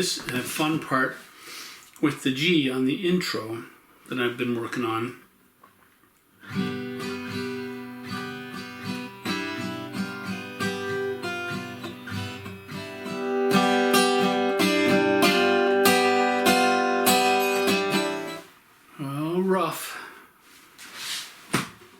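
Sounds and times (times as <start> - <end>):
fingerpicked guitar: 6.4 - 18.5.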